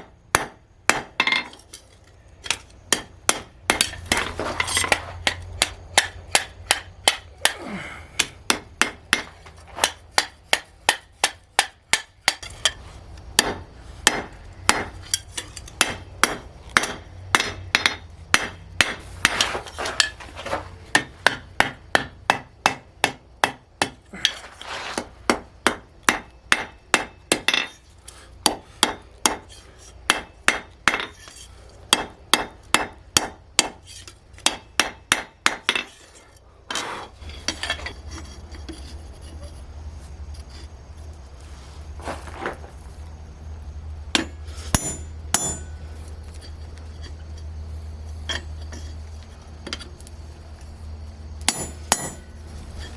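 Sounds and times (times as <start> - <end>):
hammer striking steel on anvil: 0.0 - 1.6, 2.4 - 7.6, 8.2 - 12.8, 13.4 - 20.2, 20.9 - 24.4, 25.3 - 27.8, 28.4 - 36.0, 44.1 - 45.8, 51.5 - 52.4.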